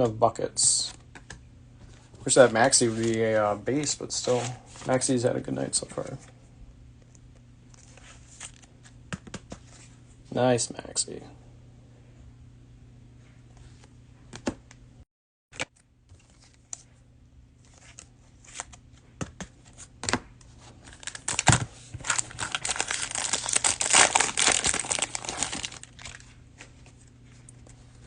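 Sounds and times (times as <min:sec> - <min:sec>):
plastic wrapper crinkling: 0:20.9 - 0:26.4.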